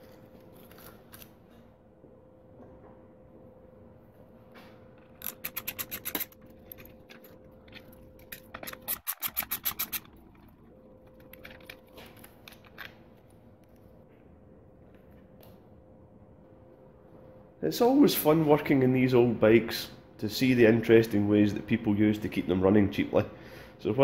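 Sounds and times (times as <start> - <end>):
faint steady hum: 0.0 - 24.0
rapid mechanical clicking: 5.0 - 11.9.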